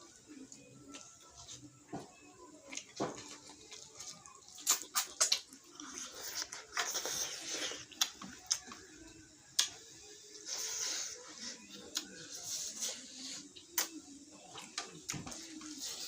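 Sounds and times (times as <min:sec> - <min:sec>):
lip-smacks and clicks: 0:04.5 - 0:05.6.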